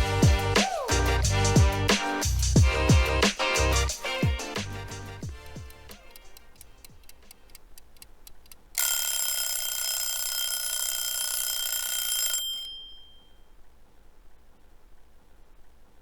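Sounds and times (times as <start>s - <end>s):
kitchen timer ticking: 5.2s - 13.2s
timer bell ringing: 8.8s - 13.5s.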